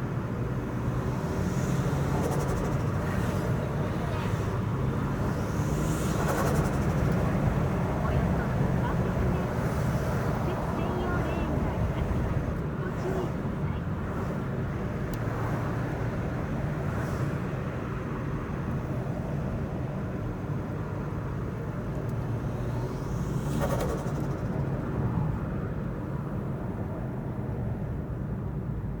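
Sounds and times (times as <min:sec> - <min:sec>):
turbo fluttering chatter: 0:06.2 - 0:13.7, 0:23.0 - 0:25.2.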